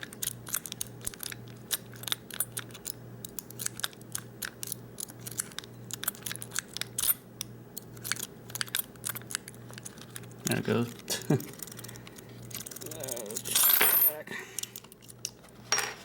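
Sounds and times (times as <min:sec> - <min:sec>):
lock pick clicking and scraping: 0:00.0 - 0:07.2, 0:07.8 - 0:10.4.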